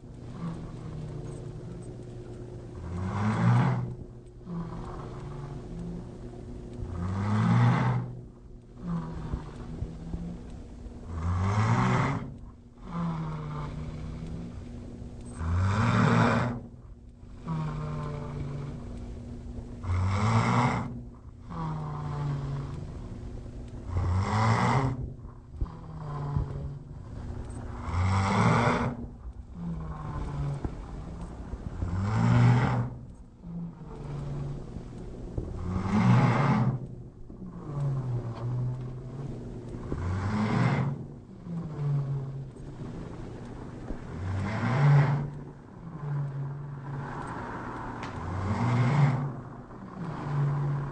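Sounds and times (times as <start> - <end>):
low drone: 0.0 - 50.9
person snoring heavily: 0.3 - 1.4, 2.8 - 6.0, 17.4 - 18.8
person snoring: 0.3 - 1.8, 2.8 - 6.0, 8.8 - 10.4, 11.1 - 14.5, 17.4 - 18.8, 27.8 - 31.0.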